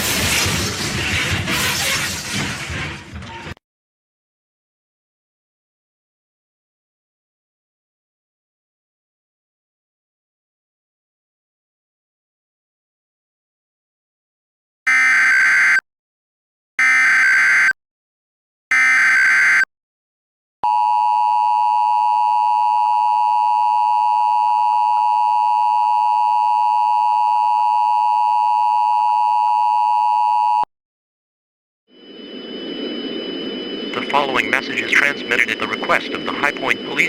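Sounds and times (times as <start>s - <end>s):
electronic data bursts: 32.2s - 37.0s.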